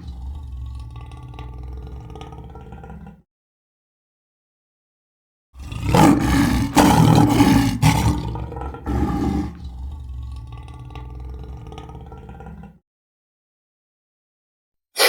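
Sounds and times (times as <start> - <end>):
large animal roaring: 0.0 - 3.1, 5.6 - 12.8.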